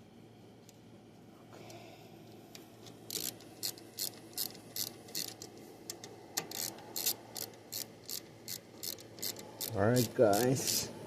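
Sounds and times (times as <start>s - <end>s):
ratchet wrench clicking: 3.0s - 10.8s.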